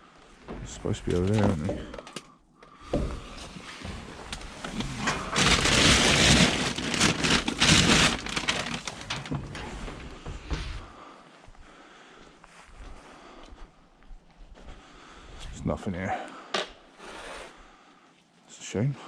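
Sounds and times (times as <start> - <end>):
rubbish rustling in a bin: 3.0 - 11.0.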